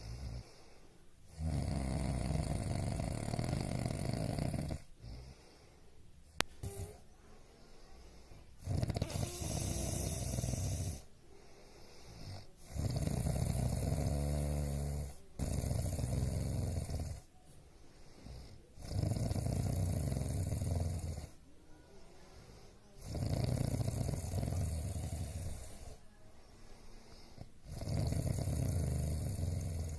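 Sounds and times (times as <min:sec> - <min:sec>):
quiet breaths: 0:00.0 - 0:29.9
person snoring heavily: 0:01.3 - 0:05.3, 0:06.6 - 0:07.0, 0:08.6 - 0:11.1, 0:11.9 - 0:17.3, 0:18.2 - 0:21.4, 0:23.0 - 0:26.0, 0:27.0 - 0:29.9.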